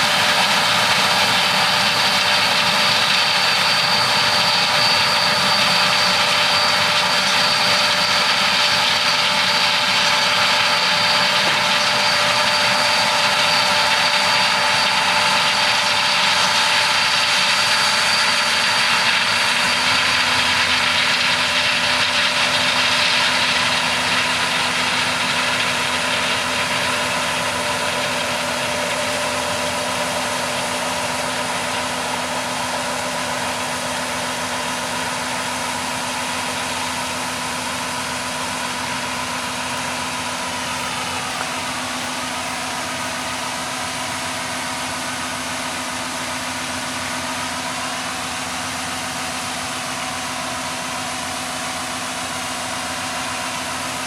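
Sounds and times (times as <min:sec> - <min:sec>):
high even whine: 0:00.0 - 0:53.6
combine harvester drone: 0:00.0 - 0:54.0.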